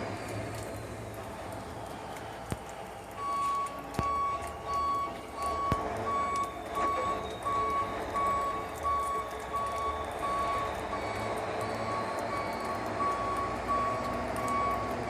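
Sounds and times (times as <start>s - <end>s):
low engine rumble: 0.0s - 15.0s
reversing alarm beeping: 3.2s - 15.0s.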